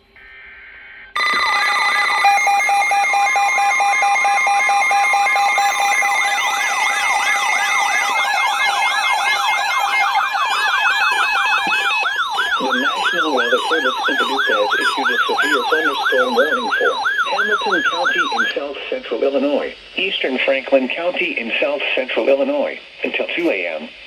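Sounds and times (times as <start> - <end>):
electronic sirens wailing and yelping: 0.2 - 19.7
steady alert tones: 1.2 - 19.4.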